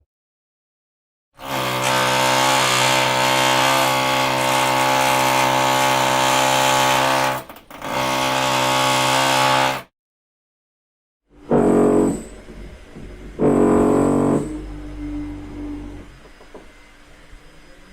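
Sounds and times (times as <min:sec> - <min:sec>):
power drill whining: 0:01.4 - 0:09.8, 0:11.5 - 0:16.8.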